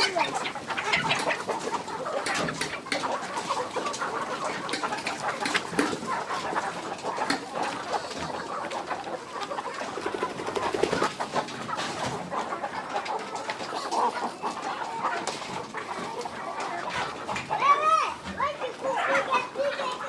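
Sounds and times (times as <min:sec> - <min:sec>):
chickens clucking: 0:00.0 - 0:20.0.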